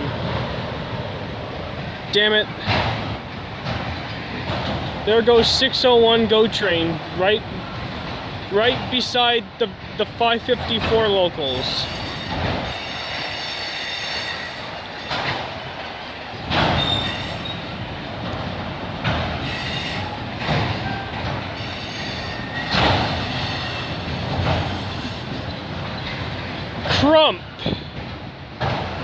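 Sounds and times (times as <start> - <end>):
train wheel knocking: 0.0 - 29.0
train wheels rumbling on rails: 0.0 - 29.0
wheel squeals: 11.6 - 15.6, 16.4 - 17.8, 19.4 - 26.6.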